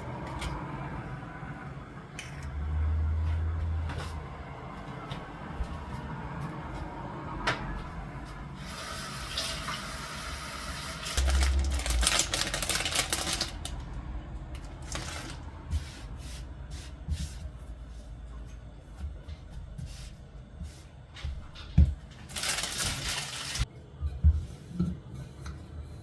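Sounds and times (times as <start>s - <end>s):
kitchen tap running: 8.6s - 13.7s, 22.3s - 23.6s.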